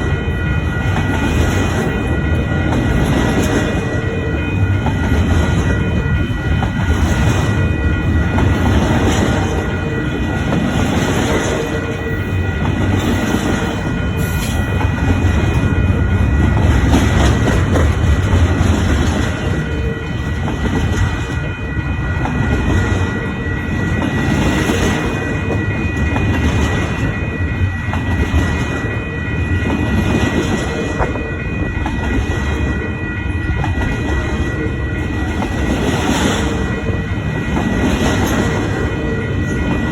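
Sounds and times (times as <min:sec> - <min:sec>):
high ringing: 0:00.0 - 0:39.9
train rumble: 0:00.0 - 0:39.9
train wheels clacking: 0:00.0 - 0:39.9.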